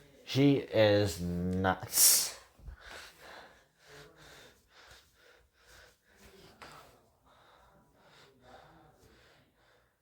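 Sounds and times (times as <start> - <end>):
person speaking: 0.2 - 2.4
faint breathing: 2.3 - 10.0.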